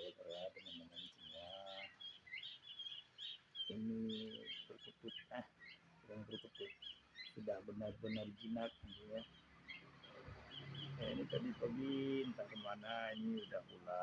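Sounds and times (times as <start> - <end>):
birds chirping: 0.0 - 14.0
short low bird calls: 0.0 - 14.0.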